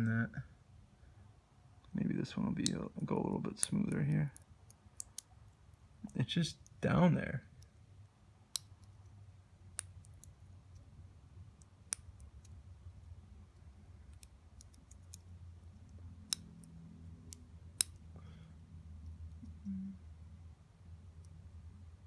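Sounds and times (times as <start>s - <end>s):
faint low hum: 0.0s - 22.0s
metal pin clicking on plastic: 2.6s - 5.3s, 8.5s - 9.1s, 14.1s - 15.2s, 15.8s - 18.0s.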